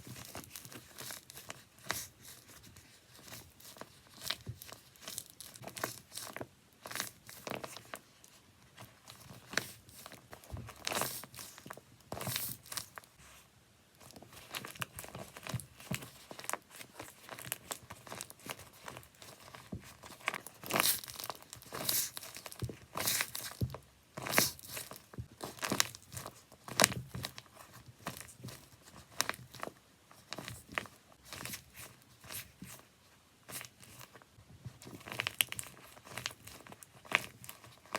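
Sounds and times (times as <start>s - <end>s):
paper and tape crinkling: 0.0s - 13.2s, 14.0s - 32.9s, 33.5s - 37.9s
crunchy paper squeezes: 9.0s - 13.2s, 14.0s - 32.8s.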